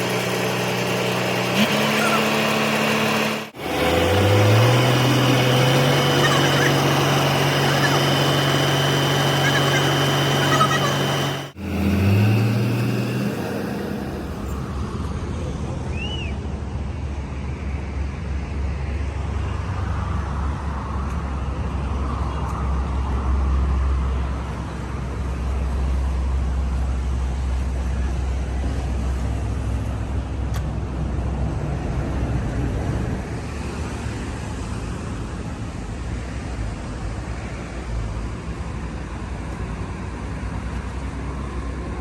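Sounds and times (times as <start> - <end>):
vehicle engine running: 0.0 - 15.8
road traffic noise: 0.0 - 42.0.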